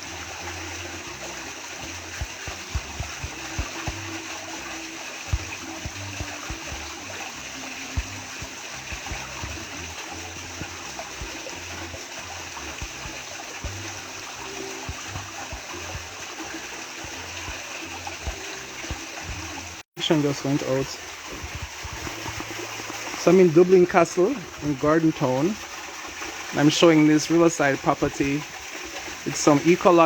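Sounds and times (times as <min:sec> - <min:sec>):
low thumps on microphone: 0:01.9 - 0:04.4, 0:05.3 - 0:07.1, 0:21.2 - 0:23.1.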